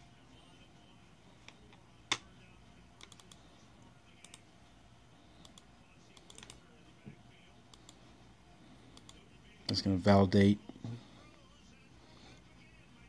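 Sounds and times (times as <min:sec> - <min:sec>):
computer keyboard keys: 0:03.0 - 0:03.4, 0:06.2 - 0:06.6
mouse clicks: 0:03.0 - 0:03.4.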